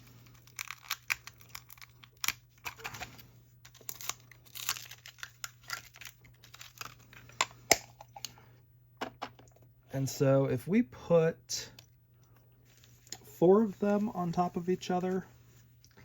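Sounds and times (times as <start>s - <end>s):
plastic packaging crinkling and tearing: 0.0s - 8.2s.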